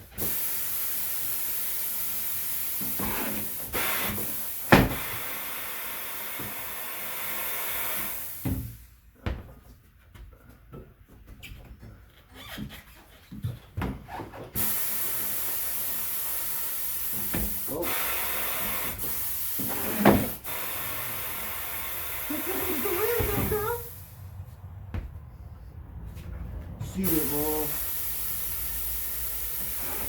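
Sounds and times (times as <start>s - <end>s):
steady hiss: 14.6s - 24.3s, 27.0s - 30.0s.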